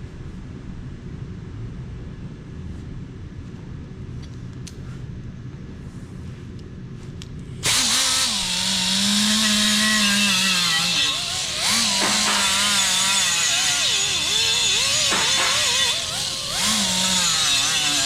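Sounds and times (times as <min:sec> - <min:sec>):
air sander whining: 0:07.6 - 0:18.0.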